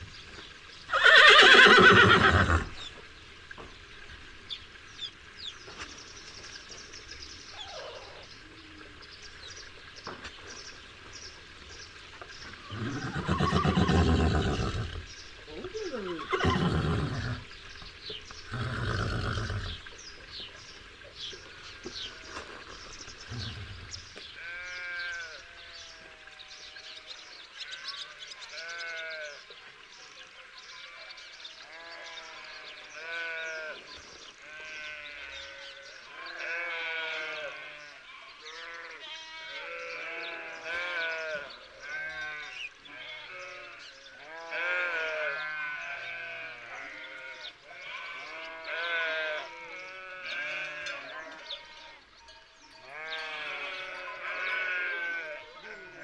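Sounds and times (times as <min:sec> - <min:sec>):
sheep bleating: 0:24.4 - 0:26.1, 0:34.4 - 0:56.0.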